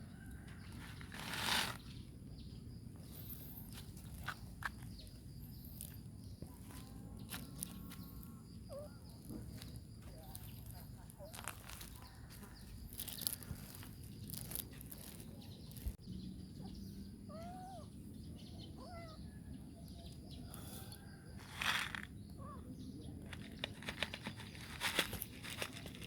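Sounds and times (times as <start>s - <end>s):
rustling: 23.4s - 26.0s.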